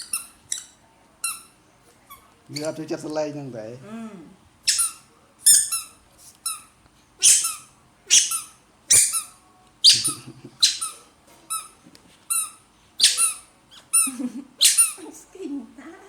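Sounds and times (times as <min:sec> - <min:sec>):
baby monkey squealing: 0:04.7 - 0:05.9, 0:07.2 - 0:11.7, 0:12.4 - 0:15.0.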